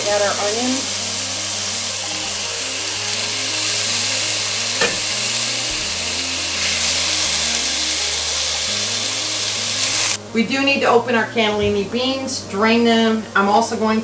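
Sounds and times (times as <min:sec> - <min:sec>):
chicken and onions sizzling in oil: 0:00.0 - 0:10.2
utensil clacking against pot: 0:04.8 - 0:05.9.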